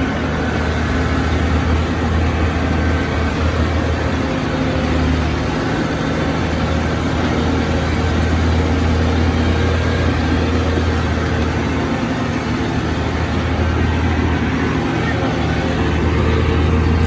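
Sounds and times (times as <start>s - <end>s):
heavy diesel engine running: 0.0s - 17.0s.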